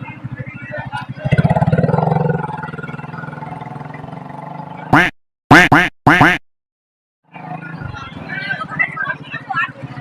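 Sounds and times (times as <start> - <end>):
comic quack-like blips: 4.9 - 6.4.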